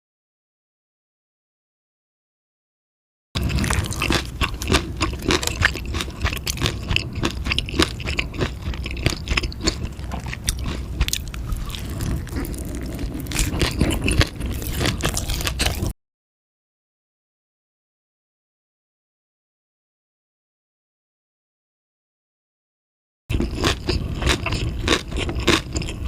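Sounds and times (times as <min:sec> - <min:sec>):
mouth chewing crunchy food: 0:03.4 - 0:16.0, 0:23.3 - 0:26.0.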